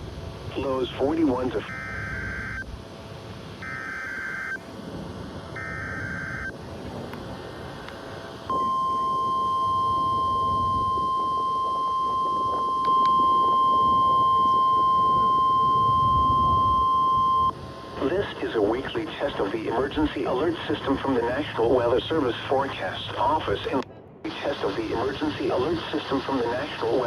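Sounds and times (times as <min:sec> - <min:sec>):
buzzy data bursts: 0:05.5 - 0:06.6.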